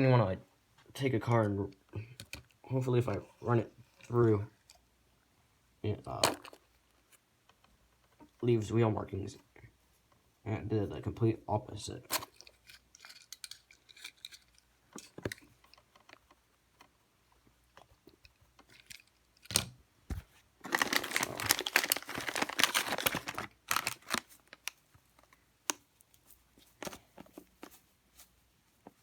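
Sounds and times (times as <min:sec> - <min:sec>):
crinkly rustling and crunching: 0:12.0 - 0:29.0.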